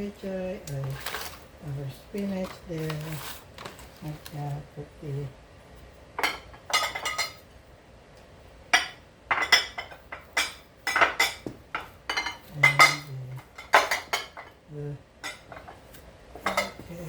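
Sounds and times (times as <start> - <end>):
dishes clinking and clattering: 6.2 - 7.4, 8.7 - 14.6, 15.2 - 15.8, 16.4 - 17.0.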